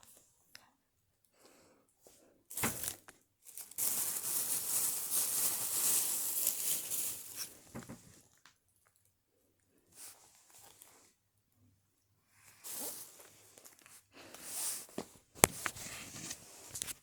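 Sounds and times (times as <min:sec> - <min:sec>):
material crinkling in hands: 0:02.6 - 0:09.0, 0:10.0 - 0:11.2, 0:12.4 - 0:17.0.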